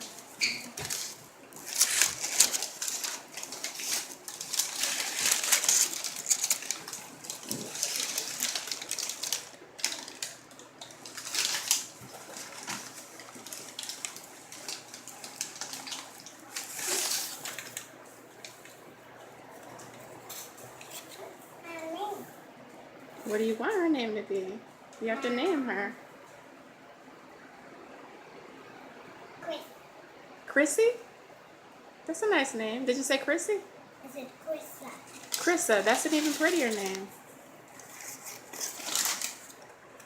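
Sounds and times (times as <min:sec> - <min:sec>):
packaging crinkling and rustling: 0:00.0 - 0:21.4, 0:34.9 - 0:40.0.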